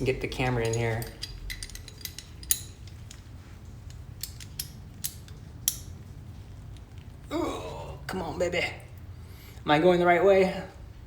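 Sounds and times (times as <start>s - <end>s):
metal wrenches clicking on nut: 0.0s - 6.0s.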